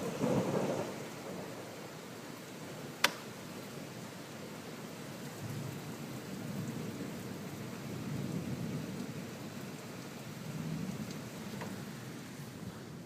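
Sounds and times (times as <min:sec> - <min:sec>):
low rolling thunder: 0:00.0 - 0:03.0, 0:05.4 - 0:09.6, 0:10.2 - 0:13.0
steady rain: 0:00.0 - 0:13.0.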